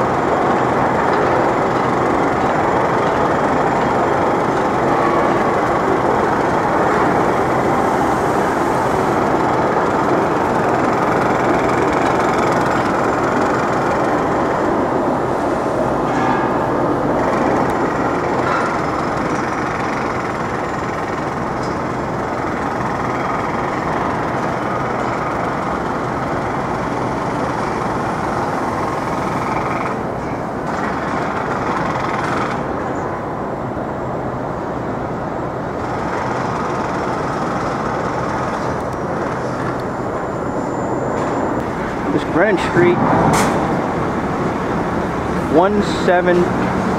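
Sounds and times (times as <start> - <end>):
passing traffic: 0.0 - 46.9.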